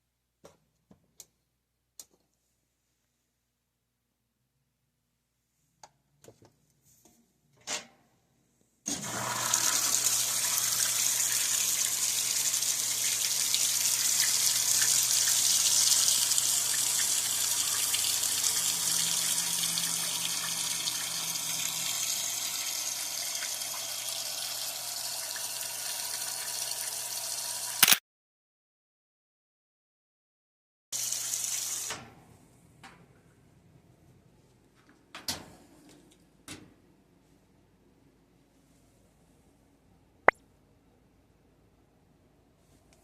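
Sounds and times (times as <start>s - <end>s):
water rushing into washing machine: 8.9s - 27.8s.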